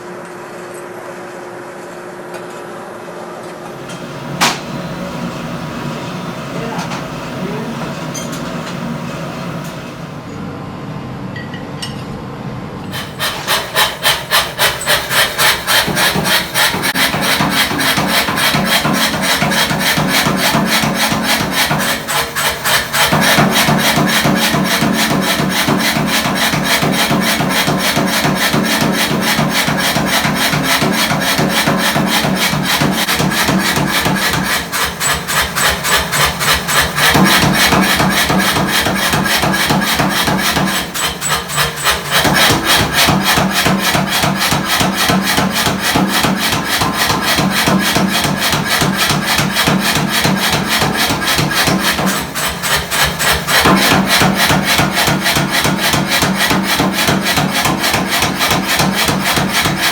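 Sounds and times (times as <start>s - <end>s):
fast strokes on hot steel: 12.8s - 59.9s.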